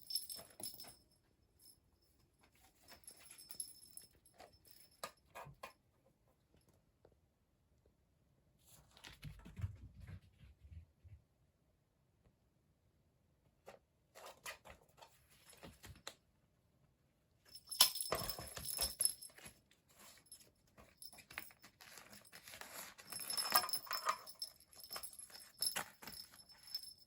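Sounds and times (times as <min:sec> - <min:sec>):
kitten scrabbling and clattering: 0:08.8 - 0:10.9, 0:17.6 - 0:27.0.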